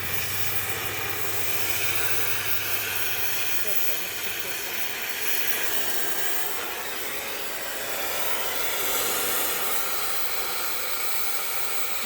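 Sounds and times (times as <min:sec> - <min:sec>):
welding torch flame hissing: 0:00.0 - 0:12.0.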